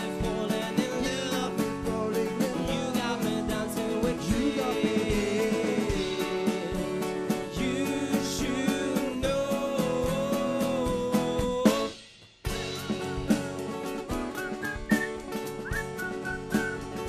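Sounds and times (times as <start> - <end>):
held vocal melody: 0.0 - 12.0
live country band: 0.0 - 17.0.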